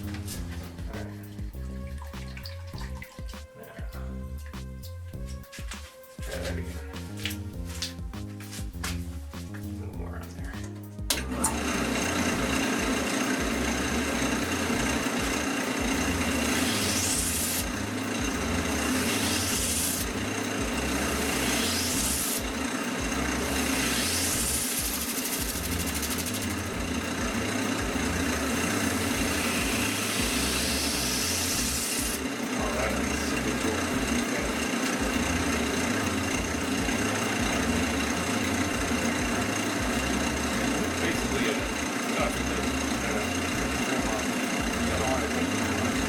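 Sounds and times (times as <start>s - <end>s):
wood lathe running: 0.0s - 3.0s, 9.8s - 46.0s
rubbing hiss rising in pitch: 12.0s - 40.8s.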